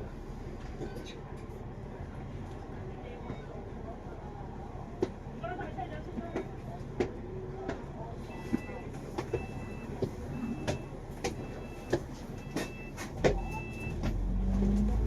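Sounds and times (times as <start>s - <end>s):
bus engine: 0.0s - 15.0s
bus body knocks and rattles: 6.1s - 14.2s.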